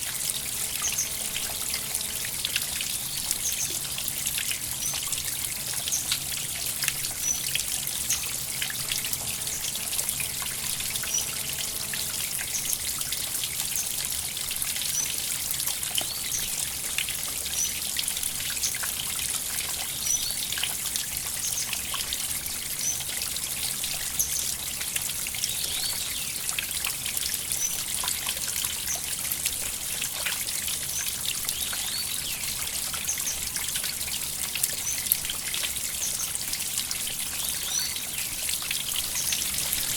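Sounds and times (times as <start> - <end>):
river water flowing: 0.0 - 14.4, 37.6 - 39.9.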